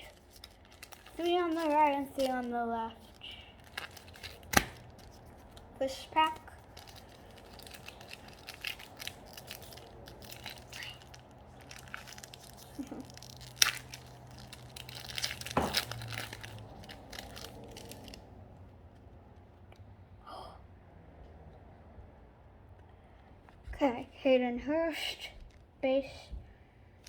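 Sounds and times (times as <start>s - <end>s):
sharp crack: 0.0s - 5.6s, 6.2s - 18.2s
plastic wrapper tearing and crinkling: 0.0s - 18.3s.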